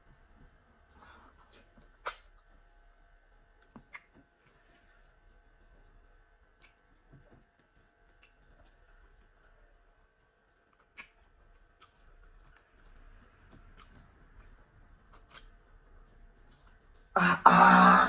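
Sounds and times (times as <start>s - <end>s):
soft mouth noises: 1.3s - 2.8s, 10.7s - 12.6s, 13.8s - 15.6s
person's voice: 17.2s - 18.0s.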